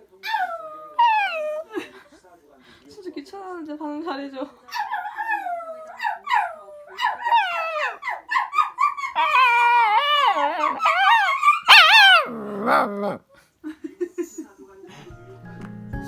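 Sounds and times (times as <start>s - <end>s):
puppy howling: 0.2s - 1.7s, 4.8s - 13.2s.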